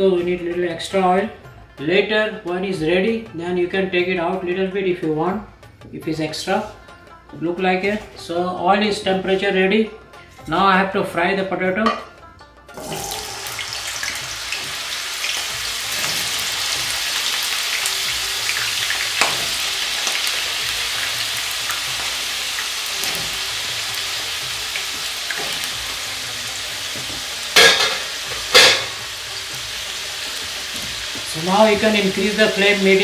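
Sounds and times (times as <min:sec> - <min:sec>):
oil popping: 0:12.7 - 0:26.0
potatoes sizzling in oil: 0:12.8 - 0:33.0.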